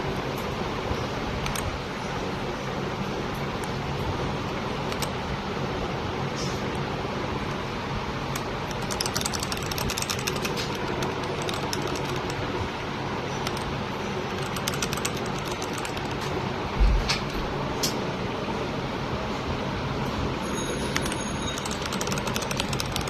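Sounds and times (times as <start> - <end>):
steady background hum: 0.0 - 23.0
mechanical keyboard typing: 1.4 - 1.7, 4.8 - 5.2, 8.3 - 12.6, 13.3 - 16.4, 20.8 - 23.0.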